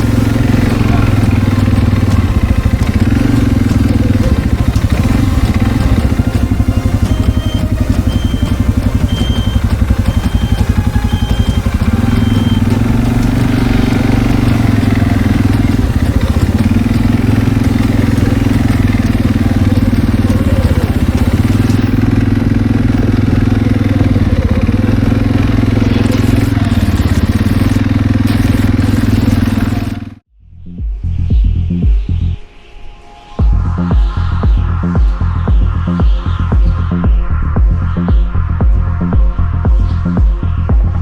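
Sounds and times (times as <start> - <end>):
engine running steadily: 0.0 - 30.2.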